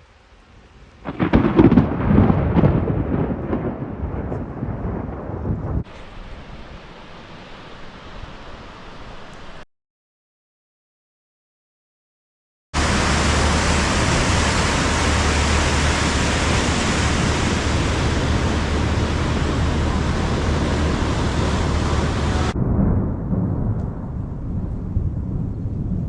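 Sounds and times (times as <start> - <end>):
flood water rushing: 5.8 - 9.6, 12.8 - 22.6
deep uneven rumble: 12.8 - 26.0.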